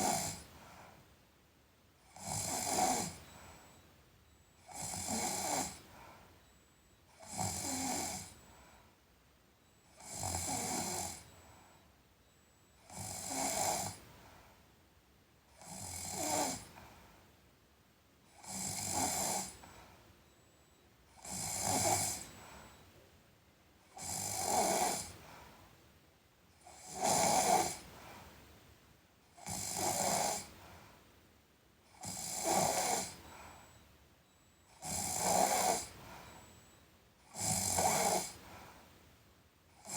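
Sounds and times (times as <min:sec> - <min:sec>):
quiet breathing: 0:00.0 - 0:01.4, 0:02.0 - 0:39.9
person snoring: 0:02.2 - 0:03.2, 0:04.7 - 0:05.8, 0:07.2 - 0:08.3, 0:21.2 - 0:22.3, 0:24.0 - 0:25.1, 0:26.7 - 0:27.8, 0:29.4 - 0:30.5, 0:32.0 - 0:33.2, 0:34.8 - 0:35.9, 0:37.3 - 0:38.4.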